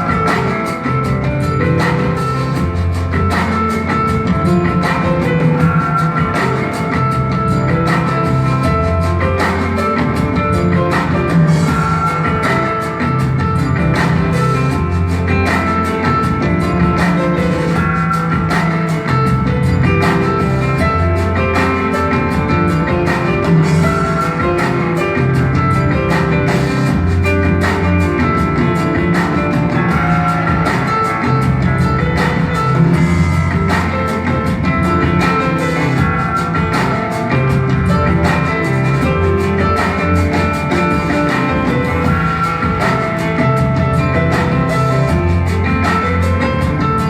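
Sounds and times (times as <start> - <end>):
deep bass notes: 0.0 - 47.0
drum kit beat: 0.0 - 47.0
pitched instrument notes: 0.0 - 47.0.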